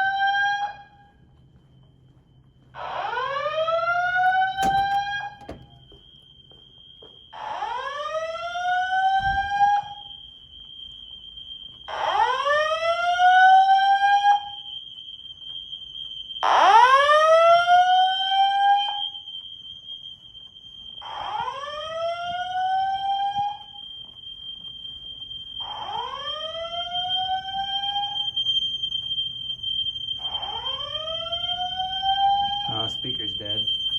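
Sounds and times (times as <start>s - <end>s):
fire alarm whoop tone: 0.0s - 33.9s
steady high-pitched tone: 26.0s - 33.9s.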